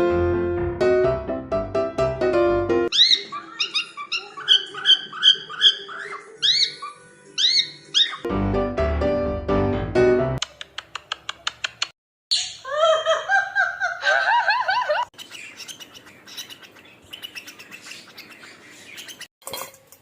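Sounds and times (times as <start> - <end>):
bird chirping: 2.9 - 8.3, 15.1 - 19.3.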